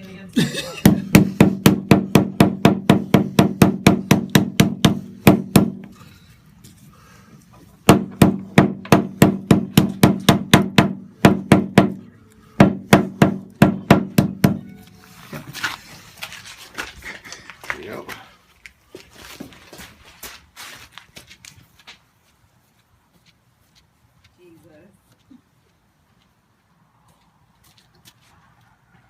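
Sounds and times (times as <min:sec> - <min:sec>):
rapid ringing knocking strikes: 0:00.9 - 0:05.8, 0:07.9 - 0:12.0.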